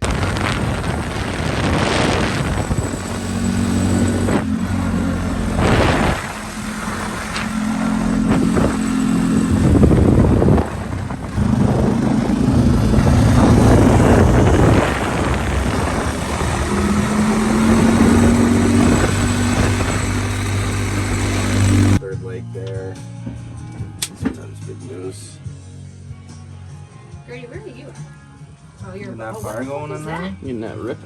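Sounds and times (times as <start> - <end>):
vehicle engine revving: 0.0 - 22.0.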